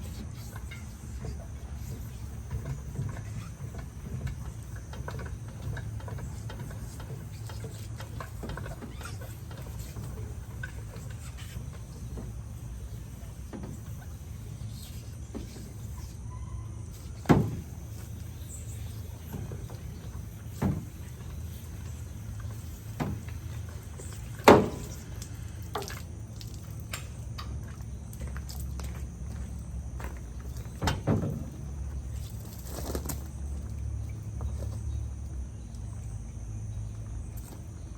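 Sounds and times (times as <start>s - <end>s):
sharp knocks and clunks: 17.2s - 17.7s, 19.3s - 21.0s, 24.4s - 25.0s, 30.8s - 31.6s.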